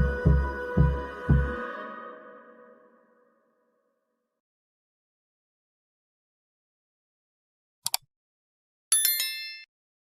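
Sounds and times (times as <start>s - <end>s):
sharp clicks: 7.8s - 8.1s.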